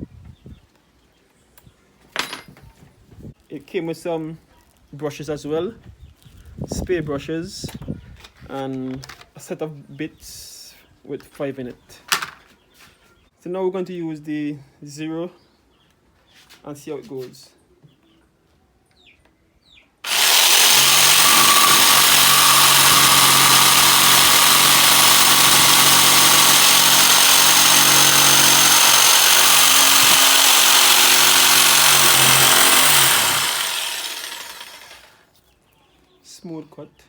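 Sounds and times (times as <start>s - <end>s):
electric jigsaw cutting board: 20.0s - 35.2s.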